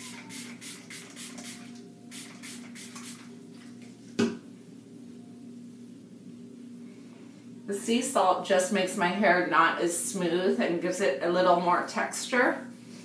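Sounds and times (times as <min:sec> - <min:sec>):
faint steady hum: 0:00.0 - 0:13.0
spray bottle hissing: 0:00.3 - 0:03.3.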